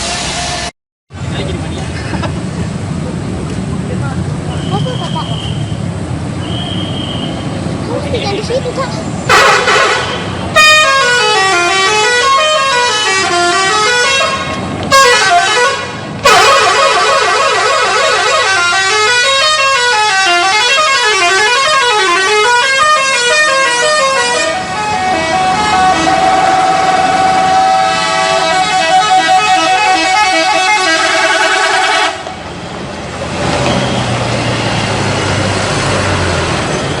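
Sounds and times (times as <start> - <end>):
musical air horn melodies: 9.3 - 32.3.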